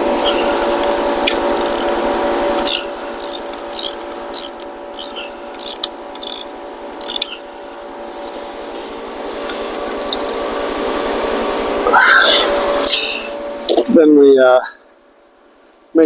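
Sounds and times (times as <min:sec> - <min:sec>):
steady hum: 0:00.0 - 0:16.0
hand ratchet rasping: 0:01.5 - 0:02.0, 0:02.6 - 0:07.3.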